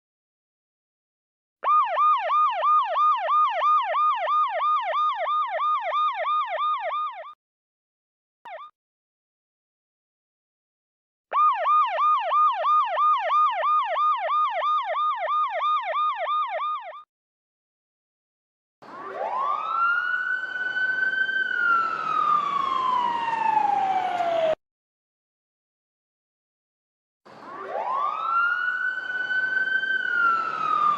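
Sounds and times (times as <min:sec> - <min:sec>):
siren fast yelp: 0:01.6 - 0:07.4, 0:08.5 - 0:08.7, 0:11.3 - 0:17.1, 0:18.9 - 0:24.6, 0:27.4 - 0:30.9
siren wail: 0:01.6 - 0:07.4, 0:11.3 - 0:17.1, 0:18.8 - 0:24.6, 0:27.3 - 0:30.9.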